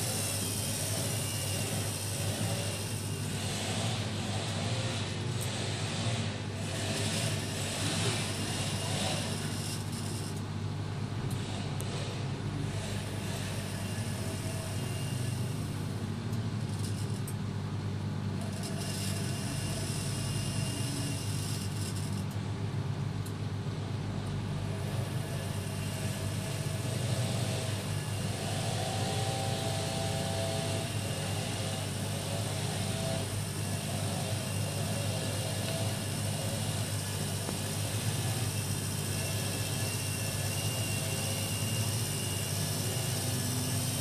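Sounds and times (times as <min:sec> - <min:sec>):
washing machine humming: 0:00.0 - 0:03.5, 0:22.2 - 0:44.0
faint high whine: 0:12.9 - 0:17.2, 0:24.9 - 0:44.0.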